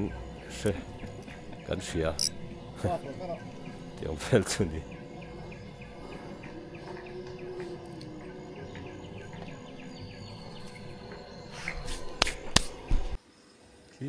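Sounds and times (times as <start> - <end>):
insects chirping: 0.0 - 7.2, 7.9 - 12.5.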